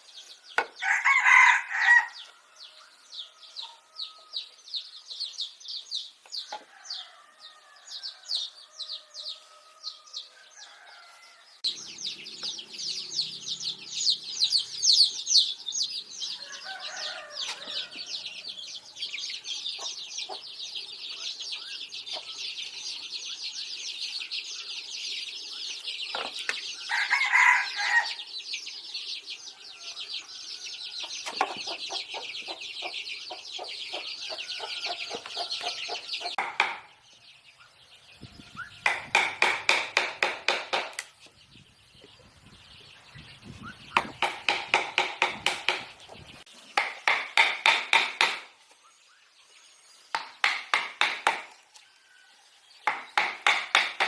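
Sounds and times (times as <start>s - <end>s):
rooster crowing: 0.8s - 4.5s, 6.5s - 11.6s, 16.3s - 18.5s, 26.9s - 28.3s, 34.2s - 35.9s
chickens clucking: 11.6s - 28.2s, 29.1s - 36.8s.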